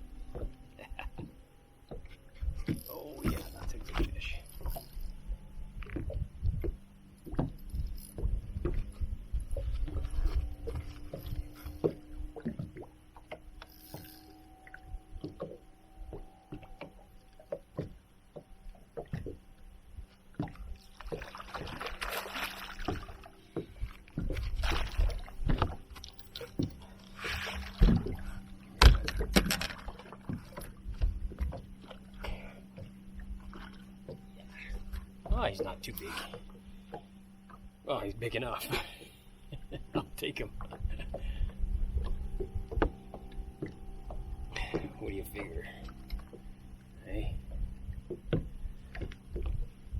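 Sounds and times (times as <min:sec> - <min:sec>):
water splashing: 0:00.0 - 0:05.2, 0:20.3 - 0:49.9
steady low hum: 0:00.0 - 0:49.9.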